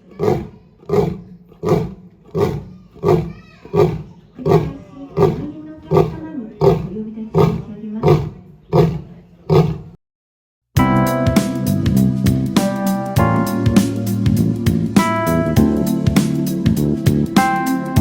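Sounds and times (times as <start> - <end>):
lion roaring: 0.0 - 10.0.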